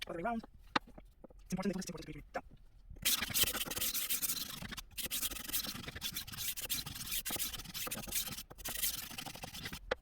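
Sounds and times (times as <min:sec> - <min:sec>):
knife sharpener grinding: 0:03.0 - 0:09.8.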